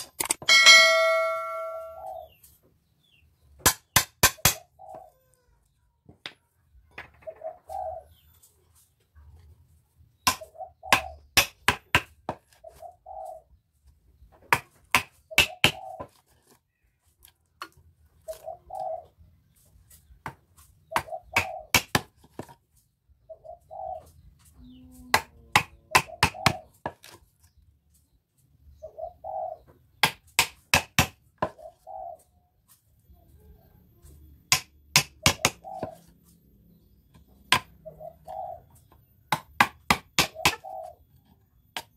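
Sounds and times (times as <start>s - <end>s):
bird calling: 0.5s - 3.2s, 4.6s - 5.4s, 12.6s - 13.6s, 15.3s - 16.4s, 18.2s - 19.2s, 20.8s - 21.8s, 28.7s - 29.8s, 31.5s - 32.5s, 35.1s - 39.1s, 40.1s - 41.9s
chisel struck into wood: 3.6s - 4.6s, 30.0s - 31.6s, 34.5s - 35.6s.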